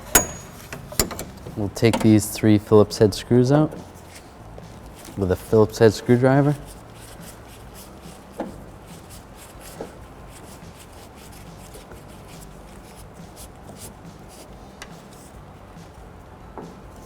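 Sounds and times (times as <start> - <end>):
screwdriver scraping: 4.9 - 15.4.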